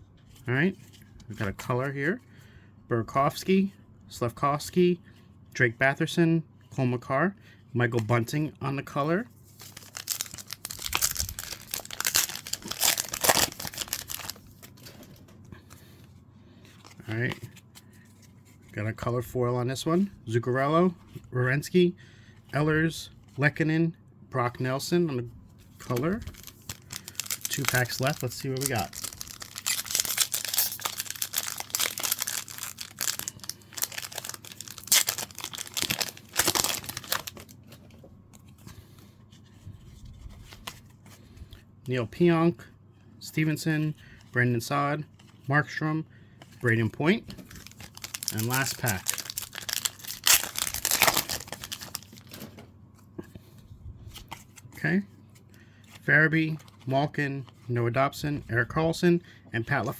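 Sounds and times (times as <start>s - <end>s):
card pack wrapper tearing and crinkling: 9.5s - 14.9s, 25.8s - 37.6s, 47.4s - 52.4s
cards rustling and clicking: 9.5s - 18.7s, 25.7s - 41.6s, 46.4s - 54.8s.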